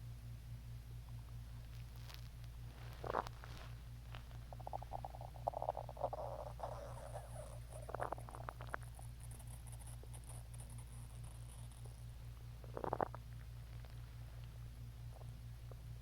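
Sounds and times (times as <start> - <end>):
steady low hum: 0.0 - 16.0
stomach growling and gurgling: 2.9 - 9.1, 12.6 - 14.0, 15.0 - 16.0.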